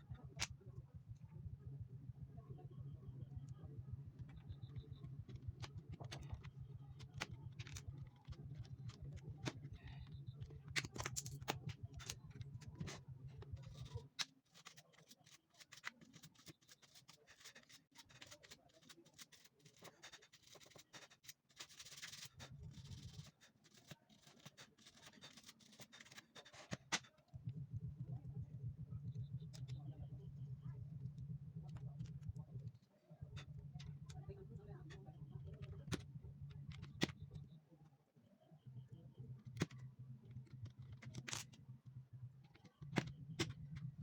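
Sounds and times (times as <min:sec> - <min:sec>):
keyboard keys clicking and scraping: 0:04.2 - 0:27.3, 0:39.4 - 0:41.6
low hum: 0:27.3 - 0:44.0.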